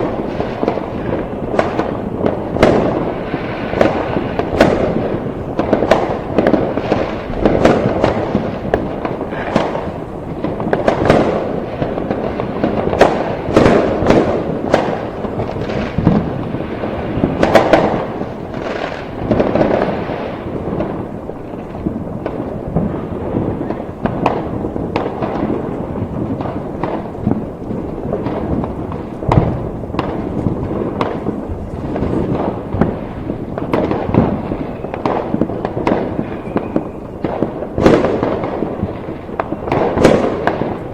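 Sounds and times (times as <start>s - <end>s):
fireworks bangs and crackles: 0.0s - 40.9s.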